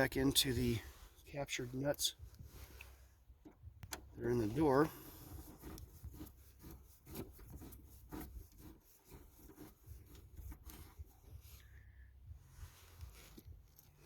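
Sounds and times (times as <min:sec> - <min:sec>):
screw clicking and rubbing: 0:05.3 - 0:11.0.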